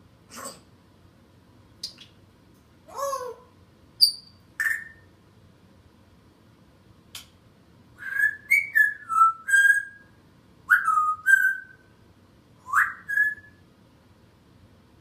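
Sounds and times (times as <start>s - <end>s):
parrot whistling: 4.0s - 5.1s, 8.0s - 11.8s, 12.6s - 13.6s
sharp click: 7.1s - 7.4s.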